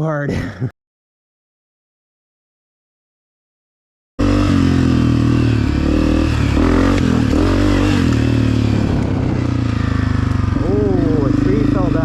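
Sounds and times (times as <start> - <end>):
dirt bike engine revving: 4.2 - 12.0.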